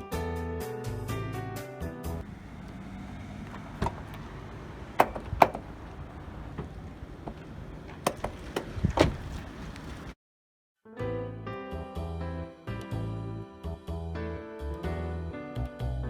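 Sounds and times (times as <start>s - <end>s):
car door clicks and knocks: 2.2s - 9.5s.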